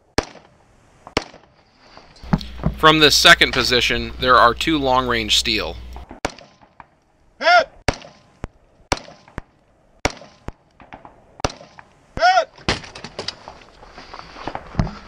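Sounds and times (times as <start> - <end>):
loud rifle shots: 0.2 - 0.5, 6.1 - 6.8, 7.9 - 9.4, 10.0 - 11.9.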